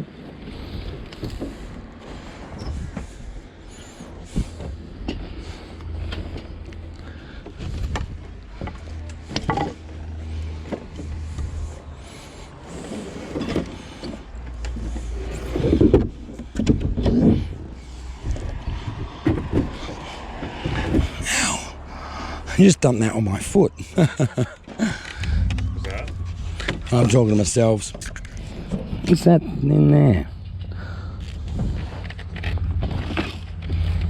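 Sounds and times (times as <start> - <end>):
steady low rumble: 0.0 - 34.0
junk knocking and rattling: 4.3 - 12.2, 13.2 - 21.3, 23.9 - 29.2, 30.3 - 34.0.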